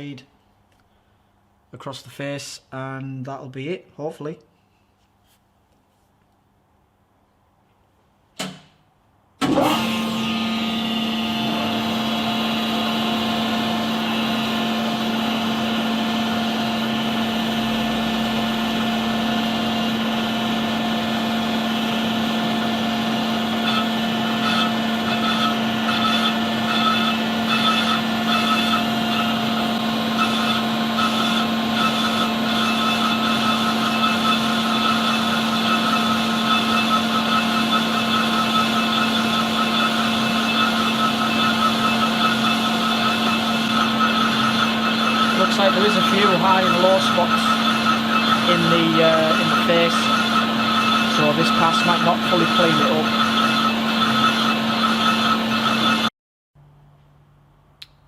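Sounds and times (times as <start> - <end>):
lathe motor and gear whine: 9.4 - 56.1
ringing of cutting tool: 23.6 - 29.6, 30.2 - 56.1.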